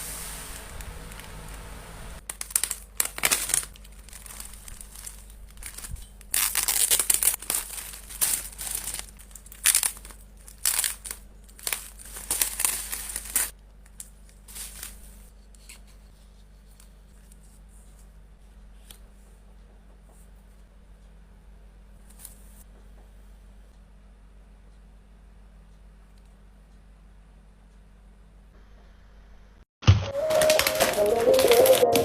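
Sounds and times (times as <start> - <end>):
packaging crinkling and tearing: 2.2 - 15.1, 30.0 - 32.0.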